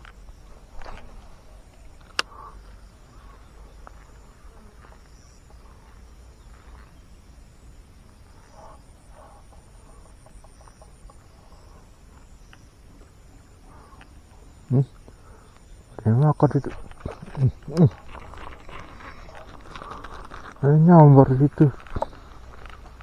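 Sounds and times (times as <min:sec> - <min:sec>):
faint clicks and rustles: 0:00.0 - 0:06.9, 0:10.3 - 0:23.0
insects buzzing: 0:00.0 - 0:23.0.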